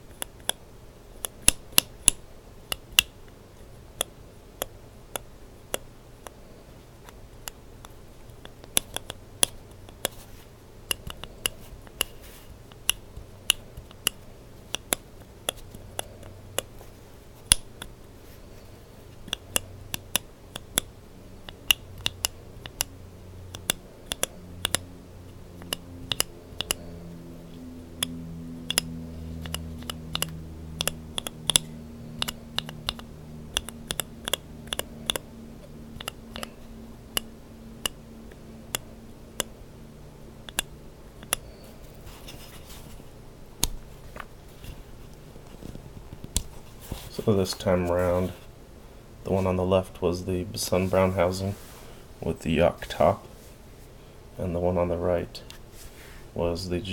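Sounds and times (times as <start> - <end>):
faint low hum: 0.0 - 56.9.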